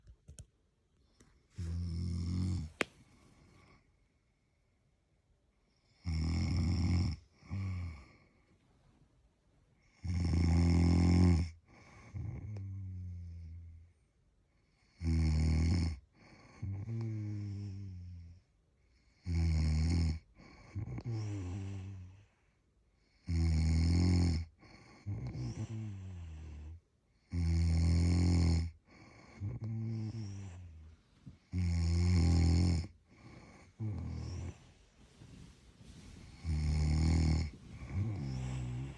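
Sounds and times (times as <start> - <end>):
deep buzzing snores: 1.6 - 2.7, 6.0 - 8.1, 10.0 - 13.0, 15.0 - 16.0, 19.3 - 22.1, 23.2 - 30.8, 31.5 - 34.7, 35.9 - 38.9.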